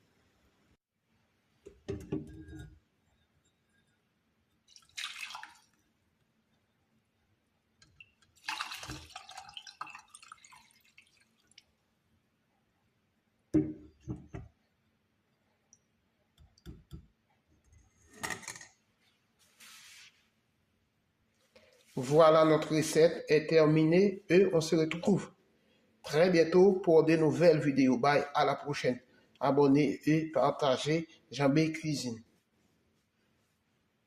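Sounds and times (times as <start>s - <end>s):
liquid pouring and dripping: 4.5s - 6.3s, 7.7s - 11.9s.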